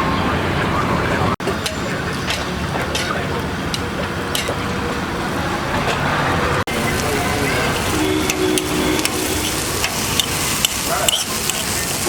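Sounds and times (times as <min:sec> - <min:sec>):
deep-frying sizzle with crackles: 0:06.7 - 0:12.0.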